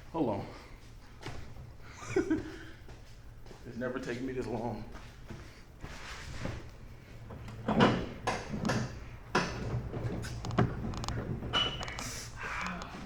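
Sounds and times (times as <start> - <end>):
metal clunks and scrapes: 5.8 - 12.4.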